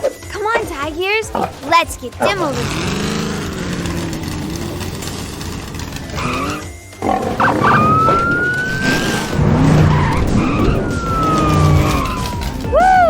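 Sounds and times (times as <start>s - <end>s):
background music: 0.0s - 13.0s
tyres skidding: 0.0s - 13.0s
cartoon engines running: 0.2s - 13.0s
whistle-like siren tone: 7.4s - 13.0s.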